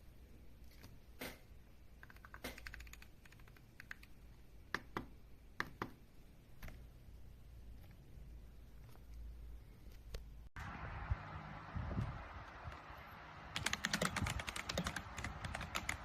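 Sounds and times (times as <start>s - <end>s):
mechanical keyboard keys clacking: 2.0s - 4.1s, 13.6s - 16.0s.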